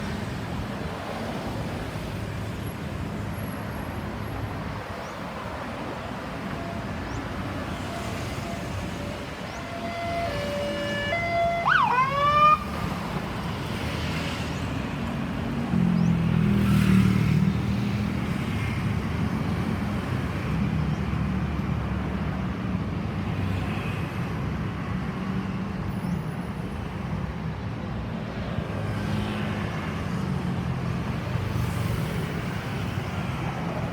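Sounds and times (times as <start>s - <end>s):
road traffic noise: 0.0s - 33.9s
ambulance siren whooping: 6.4s - 13.6s.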